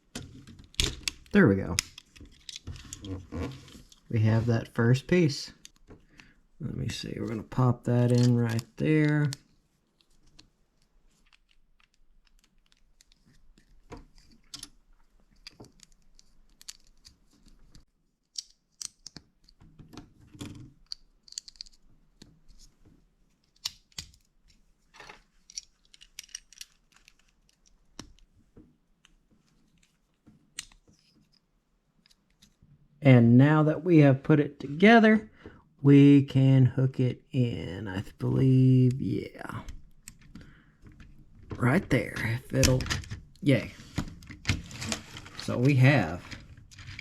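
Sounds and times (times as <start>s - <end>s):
plastic bricks clicking together: 15.4s - 17.1s, 18.3s - 19.6s, 20.7s - 21.8s, 25.4s - 28.2s.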